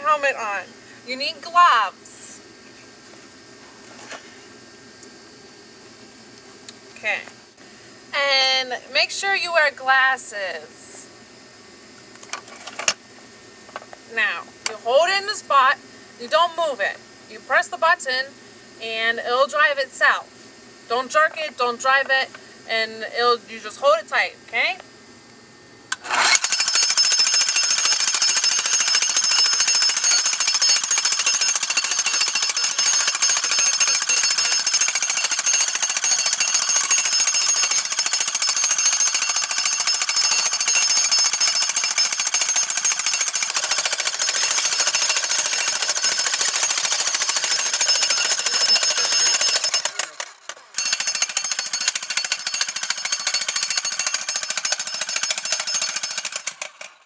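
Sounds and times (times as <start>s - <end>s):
jackhammer hammering: 25.9s - 57.0s.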